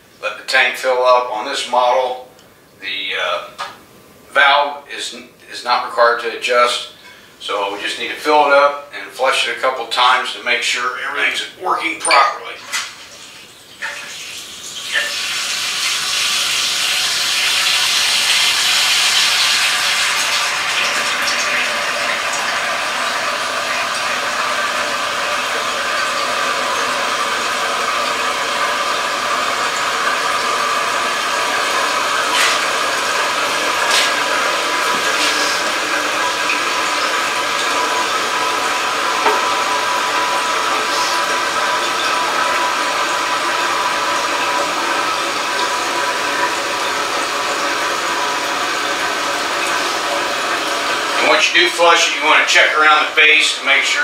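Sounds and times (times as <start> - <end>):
toilet fill valve hissing: 11.7 - 54.0.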